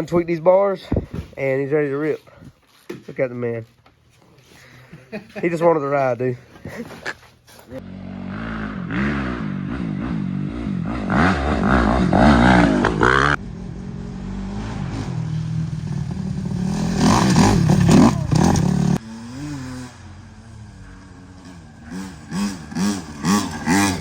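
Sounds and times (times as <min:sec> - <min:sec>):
dirt bike engine revving: 0:07.8 - 0:24.0.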